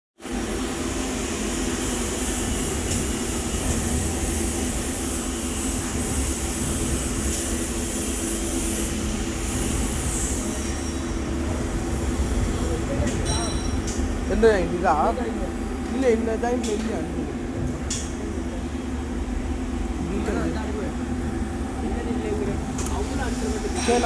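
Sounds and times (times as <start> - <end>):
mechanical hum and hiss: 0.2 - 24.0.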